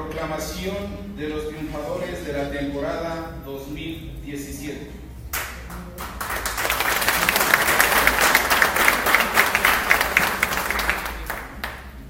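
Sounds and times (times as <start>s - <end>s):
audience applauding: 6.0s - 12.0s.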